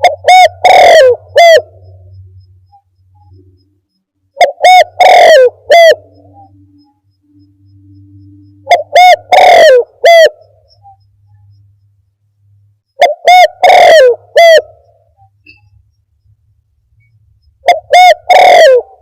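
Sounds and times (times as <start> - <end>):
dove cooing: 0.0 - 2.2, 4.4 - 6.8, 8.6 - 11.0, 13.0 - 15.6, 17.6 - 19.0.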